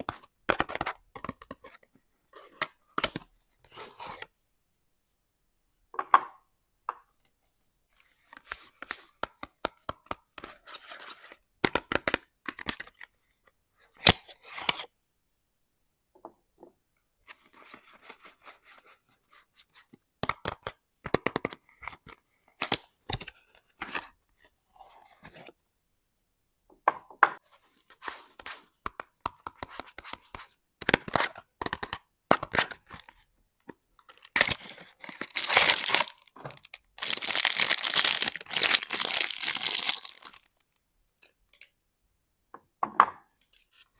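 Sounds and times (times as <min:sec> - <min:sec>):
packaging tearing and crinkling: 0:34.2 - 0:40.5.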